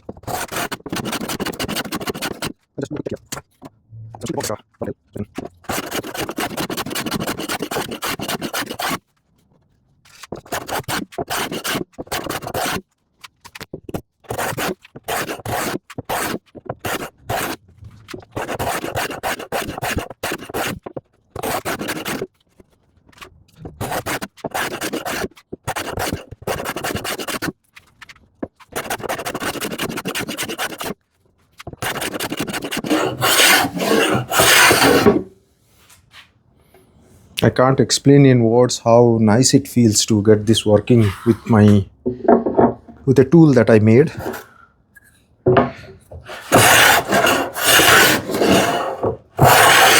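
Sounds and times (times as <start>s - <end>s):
hand plane cutting wood: 0.0s - 2.6s, 5.3s - 9.0s, 10.2s - 12.8s, 13.8s - 22.3s, 23.1s - 27.6s, 28.5s - 31.0s, 31.6s - 35.3s, 46.2s - 49.9s.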